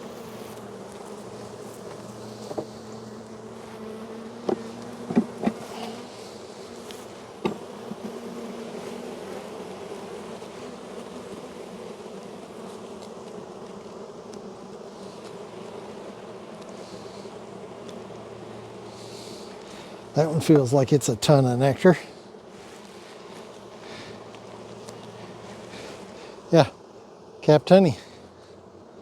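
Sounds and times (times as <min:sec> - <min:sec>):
bees buzzing: 0:00.0 - 0:29.0.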